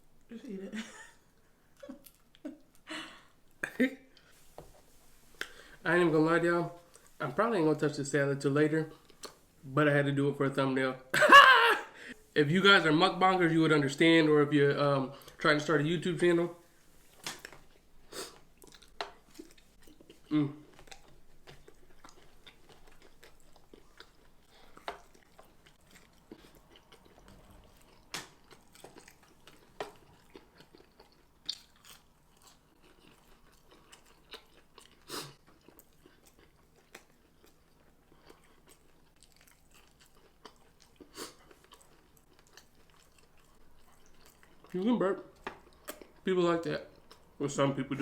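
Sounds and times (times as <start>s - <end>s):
chewing sounds: 8.9s - 9.5s, 17.4s - 47.4s.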